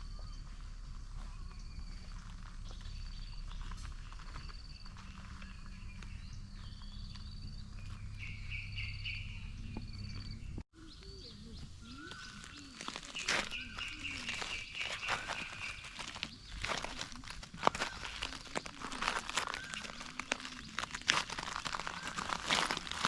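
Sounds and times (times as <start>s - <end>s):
gliding bird calls: 8.2s - 23.0s
bird trilled call: 10.8s - 23.0s.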